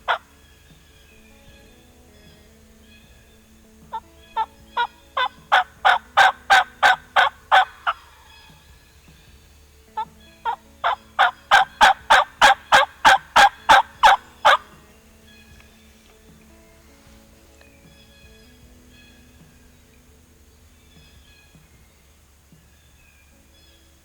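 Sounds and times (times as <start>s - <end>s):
turkey hen yelping: 0.0s - 0.2s, 3.9s - 8.3s, 10.0s - 14.8s.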